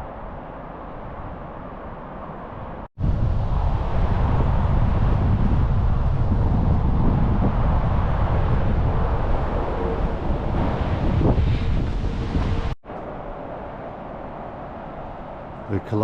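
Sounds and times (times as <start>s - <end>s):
wind buffeting the microphone: 2.4s - 16.0s.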